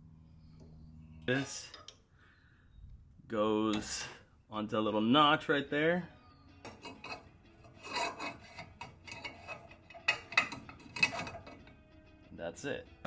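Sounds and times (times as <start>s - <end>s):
metal parts clinking and scraping: 6.7s - 11.8s.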